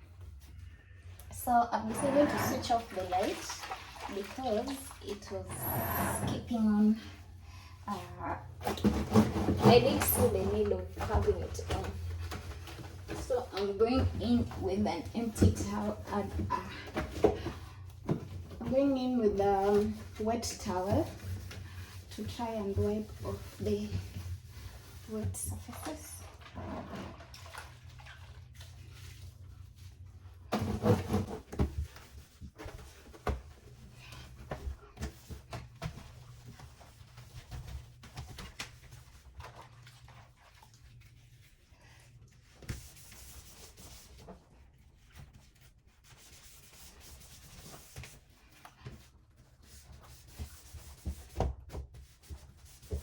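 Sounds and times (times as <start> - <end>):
wet towel wiping: 18.7 - 53.0.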